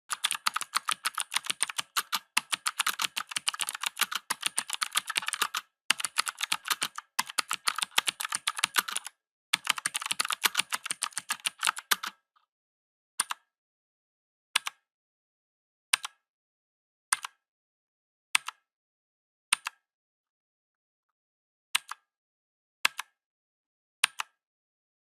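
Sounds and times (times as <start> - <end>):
mechanical keyboard typing: 0.1 - 12.2.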